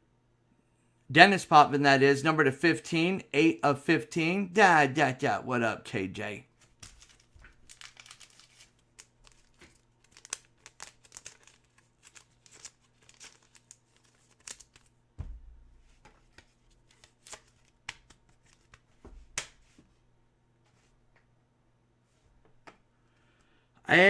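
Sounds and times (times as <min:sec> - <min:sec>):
plastic wrapping crinkling: 0:06.6 - 0:15.5
dull thump: 0:15.2 - 0:15.9.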